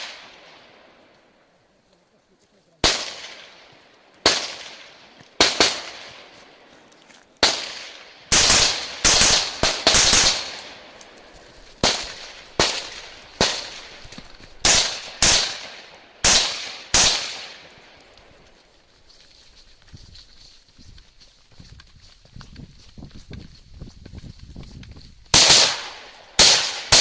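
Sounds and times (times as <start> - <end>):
rifle shots echoing: 2.8 - 6.4, 7.4 - 18.1, 25.3 - 27.0.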